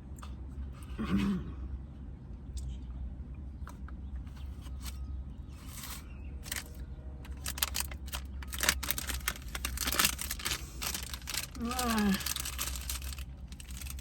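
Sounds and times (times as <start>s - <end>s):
food containers and utensils clicking: 5.8s - 11.6s
chewing clicks and crackles: 6.4s - 14.0s.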